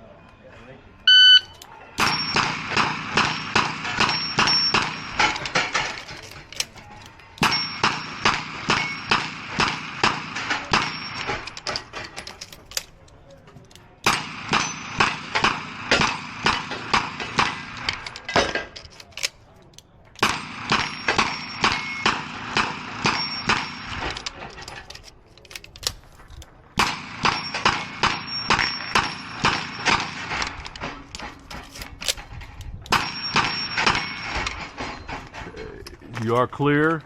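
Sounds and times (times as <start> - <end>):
steel plates ringing: 1.1 - 12.8, 14.1 - 18.4, 20.3 - 24.8, 27.0 - 31.8, 32.9 - 35.6.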